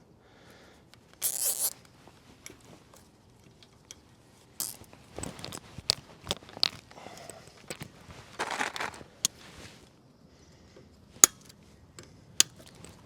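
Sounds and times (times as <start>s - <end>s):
cable tie zipping tight: 1.2s - 1.8s, 4.6s - 5.6s.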